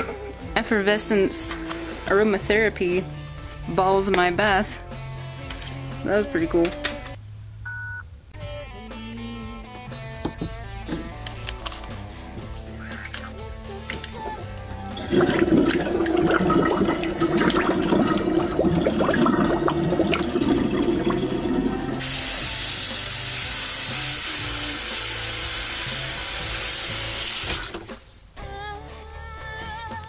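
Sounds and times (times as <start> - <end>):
water splashing in a sink: 14.9 - 22.3, 27.2 - 28.3
faucet running: 14.9 - 28.2.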